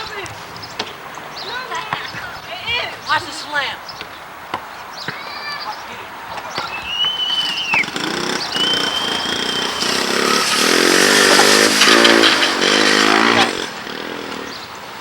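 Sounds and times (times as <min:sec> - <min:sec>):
small engine revving hard: 0:06.9 - 0:14.9.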